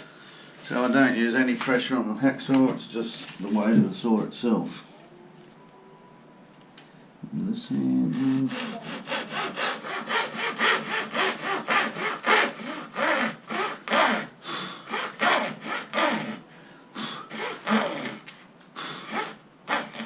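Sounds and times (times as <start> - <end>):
hacksaw rasping strokes: 8.2 - 14.3, 14.9 - 16.4, 17.3 - 18.3, 19.1 - 20.0.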